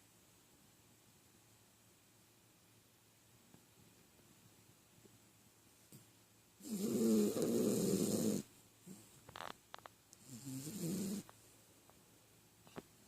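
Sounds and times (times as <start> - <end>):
dog snoring: 6.6 - 9.0, 10.2 - 11.3.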